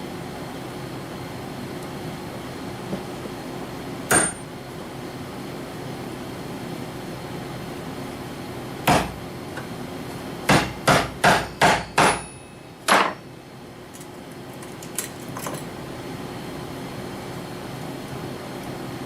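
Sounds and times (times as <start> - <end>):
hammer striking tacks: 8.8 - 9.2, 10.5 - 13.2.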